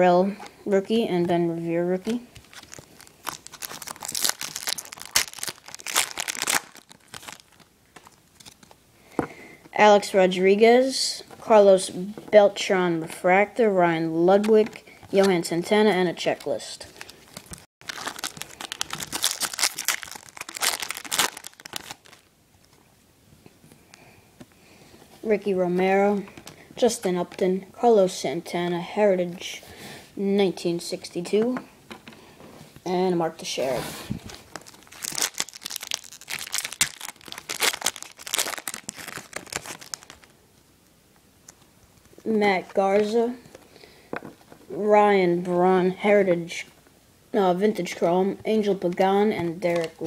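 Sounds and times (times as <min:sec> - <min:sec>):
foil wrapper crinkling: 0:02.3 - 0:08.7, 0:17.0 - 0:22.3, 0:34.2 - 0:40.4.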